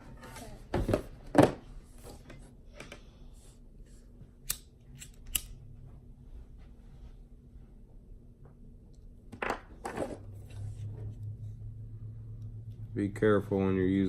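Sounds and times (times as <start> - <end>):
hobby knife clicks: 4.4 - 5.5.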